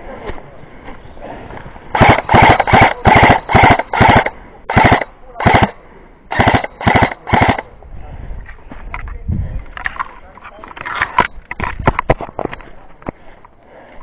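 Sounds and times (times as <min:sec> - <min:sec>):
airsoft gun firing bursts: 0:01.9 - 0:07.7.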